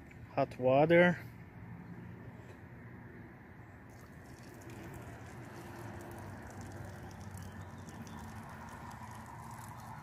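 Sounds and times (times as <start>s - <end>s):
hot water pouring into teapot: 3.9s - 10.0s.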